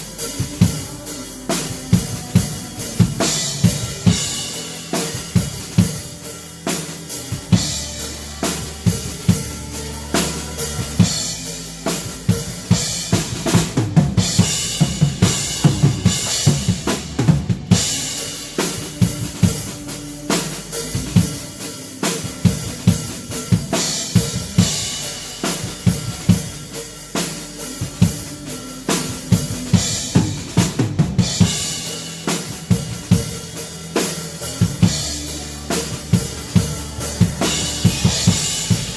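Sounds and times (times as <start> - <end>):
band playing worship song: 0.0 - 38.9
cymbals washing: 0.0 - 38.9.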